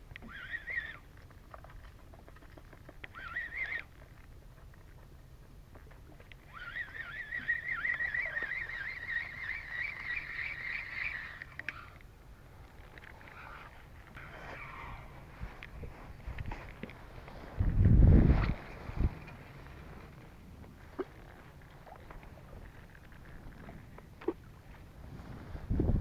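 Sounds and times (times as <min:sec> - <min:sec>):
fishing reel cranking whine: 0:06.5 - 0:12.0.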